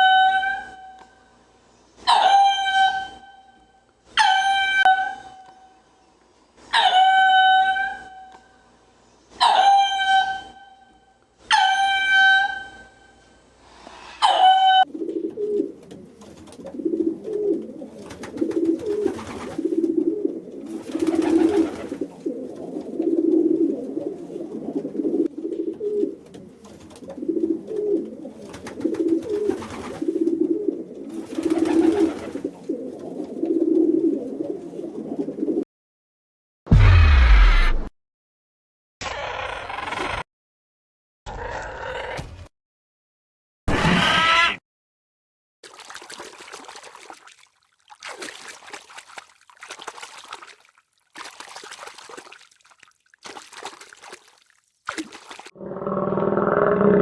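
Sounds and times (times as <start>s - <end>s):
soft low cooing calls: 14.8s - 35.6s.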